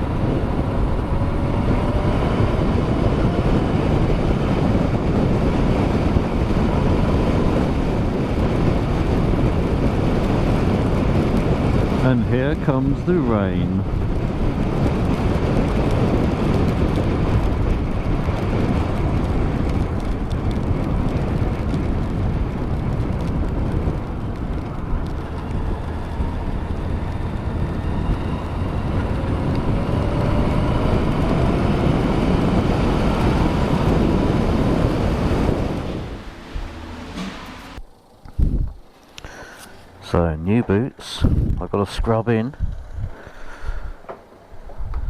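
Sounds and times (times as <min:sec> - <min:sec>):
motorcycle engine: 0:00.0 - 0:40.3
wind rush and road noise: 0:00.0 - 0:45.0
faint rising whine: 0:34.1 - 0:40.7.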